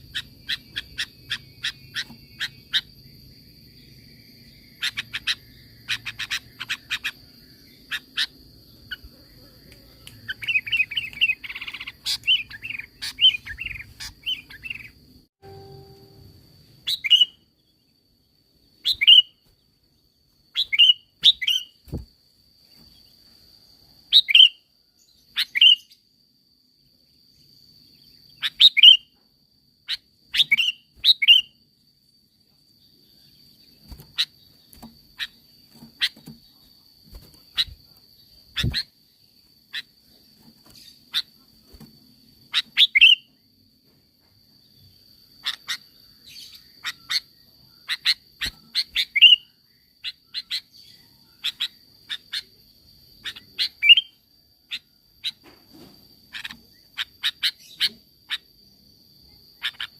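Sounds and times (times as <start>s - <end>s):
bird chirping: 0.0s - 22.0s, 22.7s - 26.1s, 27.1s - 29.2s, 29.8s - 43.5s, 44.6s - 55.6s, 56.2s - 58.7s, 59.3s - 59.9s
thin steady high tone: 15.3s - 16.8s.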